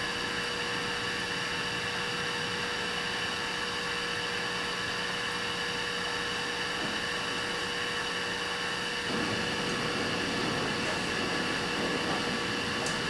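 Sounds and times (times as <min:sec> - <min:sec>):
welding torch hissing: 0:06.4 - 0:13.0.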